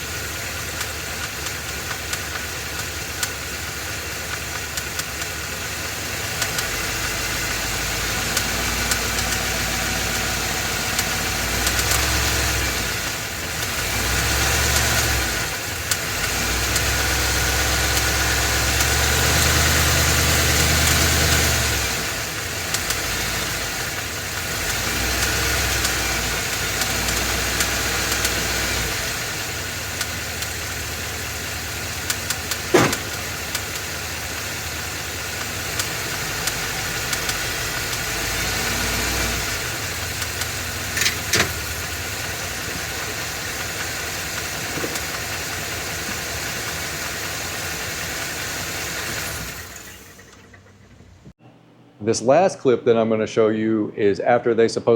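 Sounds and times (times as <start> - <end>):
engine knocking: 0.0 - 51.3
engine revving: 0.0 - 51.3
short sharp falling sound: 32.7 - 33.5.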